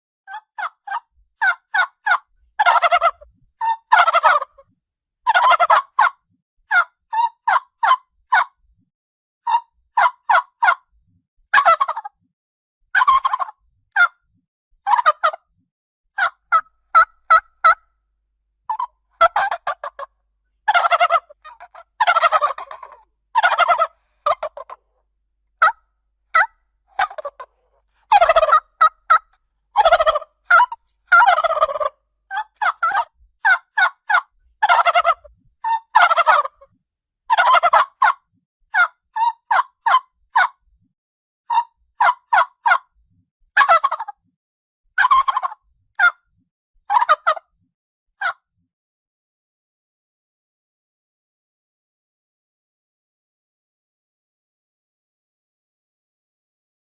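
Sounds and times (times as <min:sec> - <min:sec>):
turkey gobbling: 0:00.3 - 0:04.6, 0:05.3 - 0:08.6, 0:09.5 - 0:10.9, 0:11.5 - 0:12.2, 0:13.0 - 0:14.2, 0:14.9 - 0:15.4, 0:16.2 - 0:17.9, 0:18.7 - 0:20.1, 0:20.7 - 0:24.9, 0:25.6 - 0:36.6, 0:37.3 - 0:38.2, 0:38.8 - 0:40.6, 0:41.5 - 0:42.9, 0:43.6 - 0:44.2, 0:45.0 - 0:46.2, 0:46.9 - 0:47.4, 0:48.2 - 0:48.4
turkey clucks and yelps: 0:00.3 - 0:08.6, 0:09.5 - 0:10.9, 0:11.5 - 0:12.2, 0:13.0 - 0:14.2, 0:14.9 - 0:15.4, 0:16.2 - 0:17.9, 0:18.7 - 0:24.9, 0:25.6 - 0:36.7, 0:37.3 - 0:40.6, 0:41.5 - 0:42.9, 0:43.6 - 0:44.2, 0:45.0 - 0:46.2, 0:46.9 - 0:47.5, 0:48.2 - 0:48.4.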